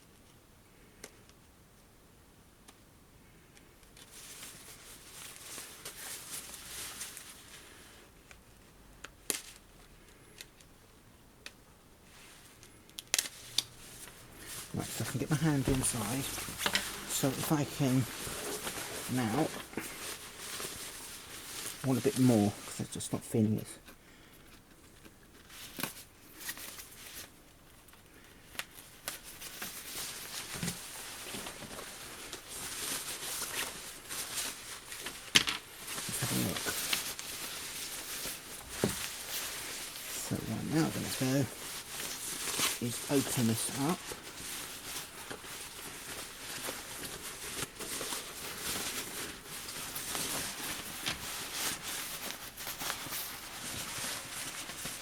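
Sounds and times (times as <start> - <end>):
backpack fabric rustling: 13.2 - 22.9, 28.8 - 55.0.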